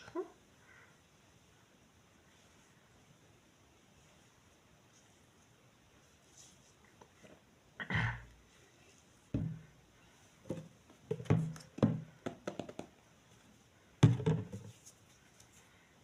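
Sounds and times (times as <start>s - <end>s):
objects knocking on hard surface: 9.4s - 9.6s, 10.5s - 13.0s, 14.0s - 14.8s.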